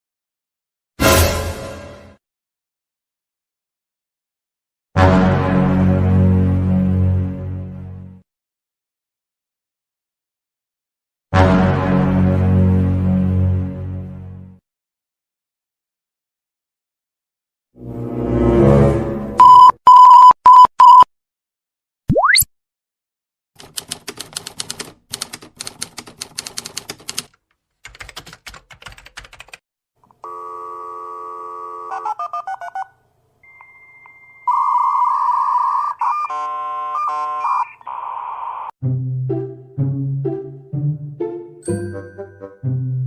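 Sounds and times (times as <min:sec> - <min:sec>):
electronic telephone tones: 0:19.4 - 0:21.1, 0:30.2 - 0:38.7
short loud beeps: 0:19.4 - 0:21.1
rapid typewriter-like clicking: 0:23.6 - 0:29.6.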